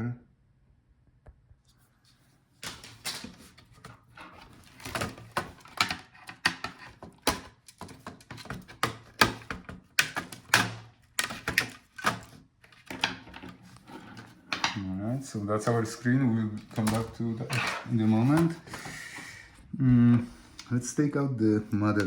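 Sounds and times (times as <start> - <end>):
laptop parts clicking and scraping: 2.6 - 14.8.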